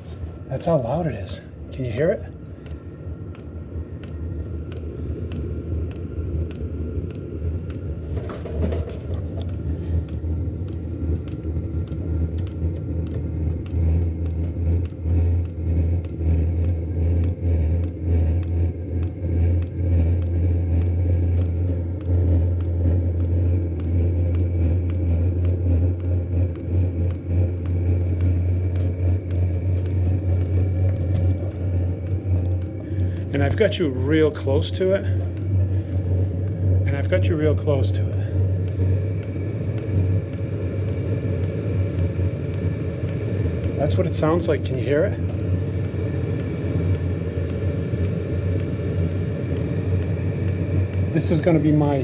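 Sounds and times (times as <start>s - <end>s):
air heater rumbling: 0.0s - 52.0s
light regular ticks: 0.0s - 52.0s.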